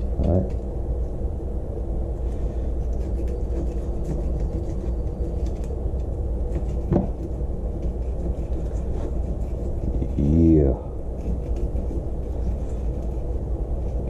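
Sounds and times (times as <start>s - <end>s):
steady low rumble: 0.0s - 14.0s
knife scraping fish backbone: 2.8s - 5.7s, 11.2s - 14.0s.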